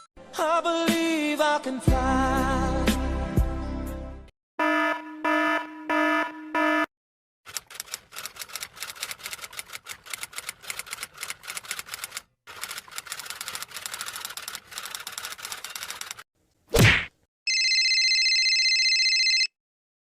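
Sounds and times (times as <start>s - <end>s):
keyboard typing clatter: 7.5s - 16.2s.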